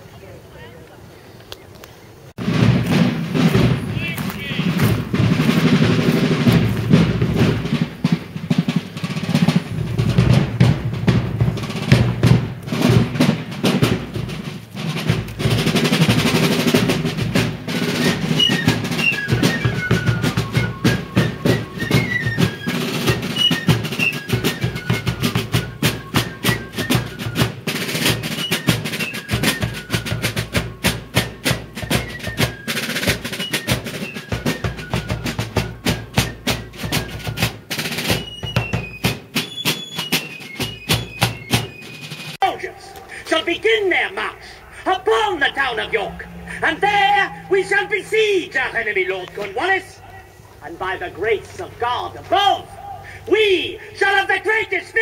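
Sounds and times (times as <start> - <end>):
bass drum: 2.4 - 8.8
snare drums rolling: 2.4 - 55.0
shrill fife melody: 2.9 - 55.0.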